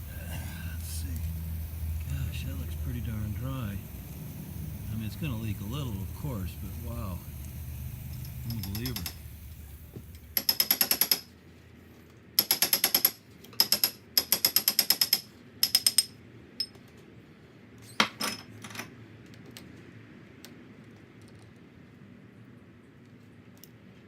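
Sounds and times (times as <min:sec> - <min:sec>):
ratchet clicking: 0:00.8 - 0:11.3.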